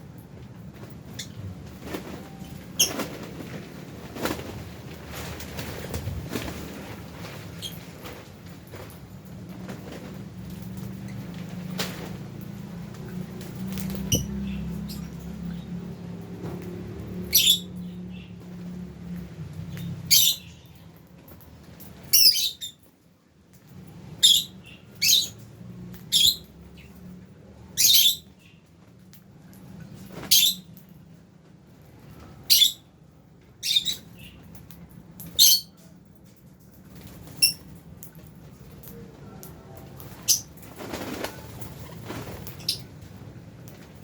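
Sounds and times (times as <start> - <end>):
lovebirds giving shrill calls: 17.3 - 17.7, 20.1 - 20.5, 22.1 - 22.8, 24.2 - 25.4, 27.8 - 28.3, 30.3 - 30.7, 32.5 - 32.8, 35.4 - 35.7.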